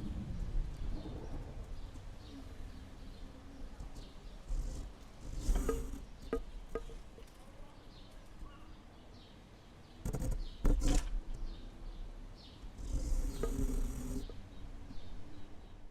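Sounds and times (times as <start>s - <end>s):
low rumbling wind buffets: 0.0s - 6.1s
wind gusting: 0.0s - 6.2s.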